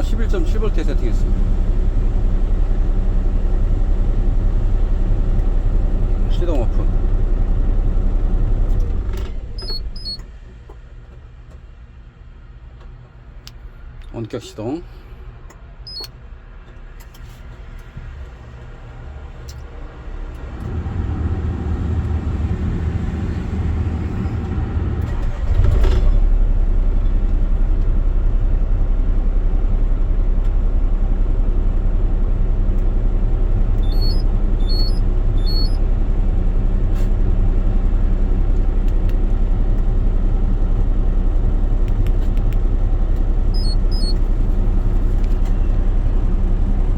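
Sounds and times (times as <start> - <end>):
diesel engine starting and idling: 0.0 - 11.4, 14.9 - 46.9
short high beeps: 9.6 - 10.2, 33.8 - 35.8, 43.6 - 44.2.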